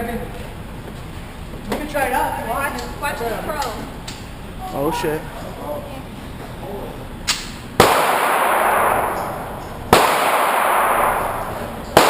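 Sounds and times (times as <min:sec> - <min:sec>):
pistol shots echoing: 0:07.8 - 0:12.0.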